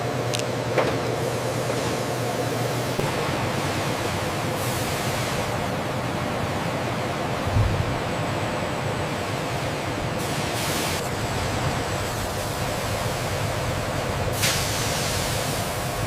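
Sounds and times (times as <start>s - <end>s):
machinery noise: 0.0s - 16.0s
hiss of air or steam: 3.0s - 5.7s, 10.2s - 16.0s.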